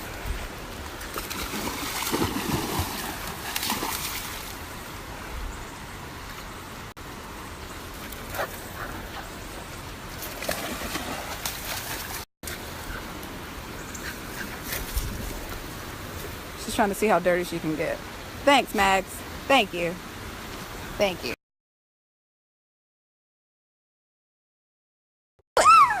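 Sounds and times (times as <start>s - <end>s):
faint water splashes: 0.0s - 6.9s, 10.1s - 13.4s
stream water rushing: 0.0s - 14.8s.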